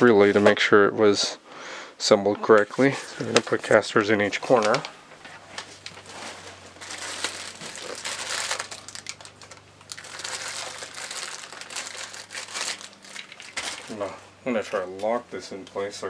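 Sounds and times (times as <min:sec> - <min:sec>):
plastic packaging crinkling: 0:02.8 - 0:14.1.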